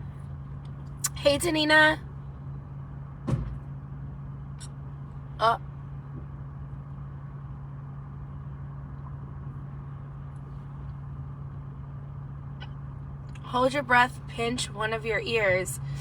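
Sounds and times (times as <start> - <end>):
car engine hum and road noise: 0.0 - 16.0.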